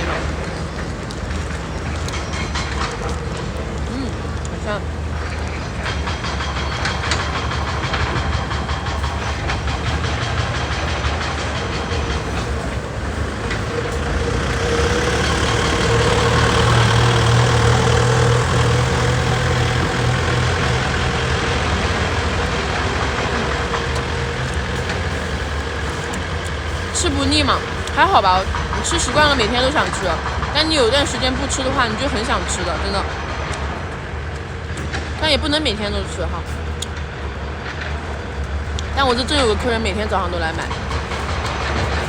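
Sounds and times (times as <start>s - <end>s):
large engine humming: 0.0s - 42.0s.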